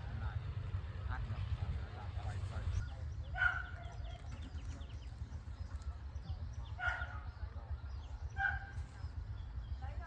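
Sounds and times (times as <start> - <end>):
dog barking: 3.4 - 3.9, 6.8 - 7.2, 8.4 - 8.8.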